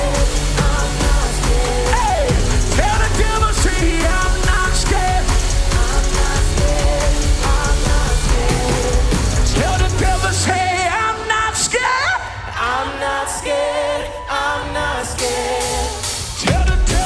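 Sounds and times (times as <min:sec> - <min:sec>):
live band playing: 0:00.0 - 0:11.1
heavy bass: 0:00.0 - 0:11.6
person singing: 0:00.0 - 0:17.0.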